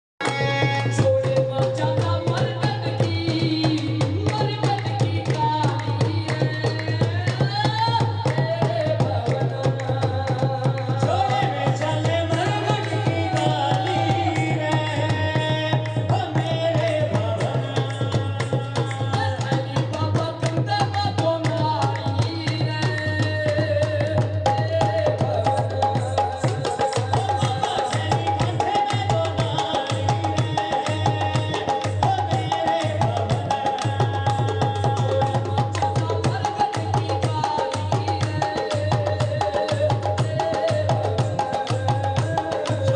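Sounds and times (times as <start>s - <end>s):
hand drum percussion: 0.2s - 42.9s
person singing: 0.2s - 42.9s.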